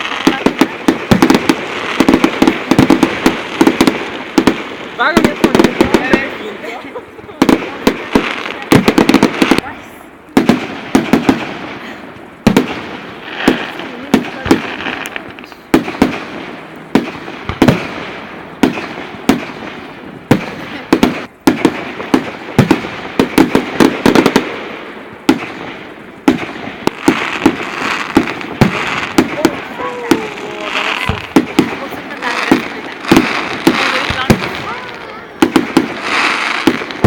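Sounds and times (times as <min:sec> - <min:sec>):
firework shells bursting: 0:00.0 - 0:06.7
rolling echo and crackle: 0:00.0 - 0:37.0.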